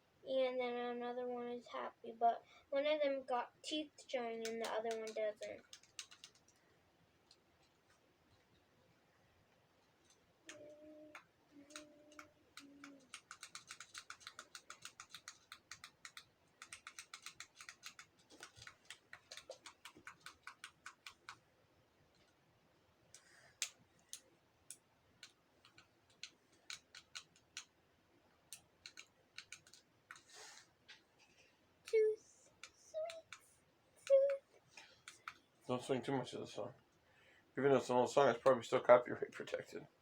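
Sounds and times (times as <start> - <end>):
fidget toy clicking: 4.3 - 6.6, 10.5 - 21.4, 23.1 - 27.7, 28.5 - 30.3, 31.8 - 34.4, 35.0 - 35.4.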